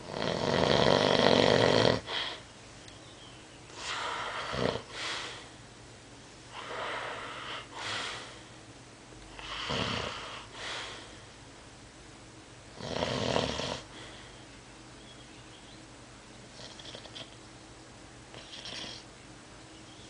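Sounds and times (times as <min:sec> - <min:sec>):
person snoring: 0:00.0 - 0:02.2, 0:03.8 - 0:05.3, 0:09.4 - 0:11.0, 0:12.8 - 0:13.9.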